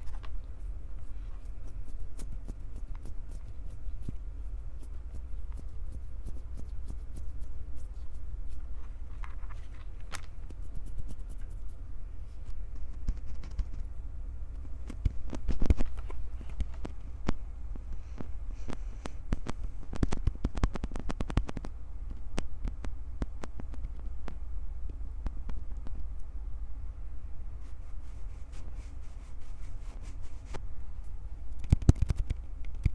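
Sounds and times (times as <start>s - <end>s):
clicks and scratches on microphone: 12.8s - 13.9s, 14.6s - 17.4s, 18.7s - 24.4s, 31.6s - 32.9s.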